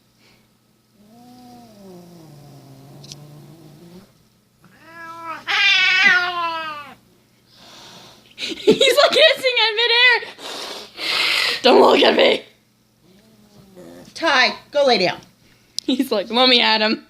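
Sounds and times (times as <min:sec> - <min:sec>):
cat yowling and growling: 0:01.0 - 0:07.0, 0:13.0 - 0:14.2.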